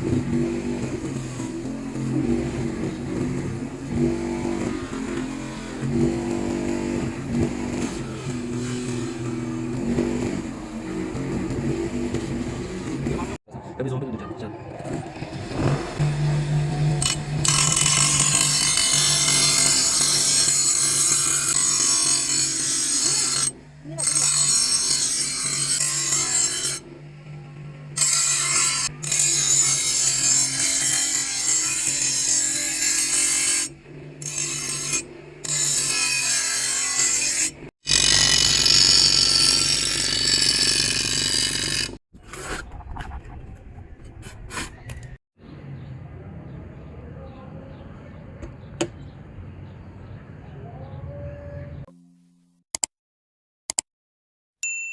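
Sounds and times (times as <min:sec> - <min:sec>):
grinder rasping on steel blade: 0:00.1 - 0:13.4, 0:15.3 - 0:42.7
motor hum: 0:14.8 - 0:21.6
power tool motor hum: 0:15.2 - 0:42.0.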